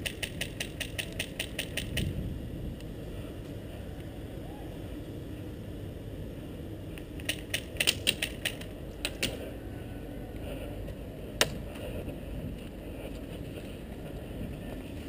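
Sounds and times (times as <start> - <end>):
wind rumble on microphone: 1.6 - 6.9, 8.8 - 15.0.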